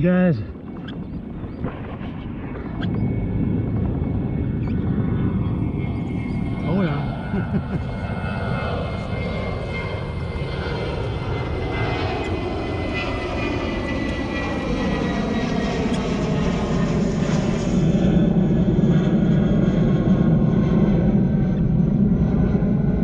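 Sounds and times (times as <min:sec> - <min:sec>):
propeller airplane passing overhead: 0:00.0 - 0:23.0.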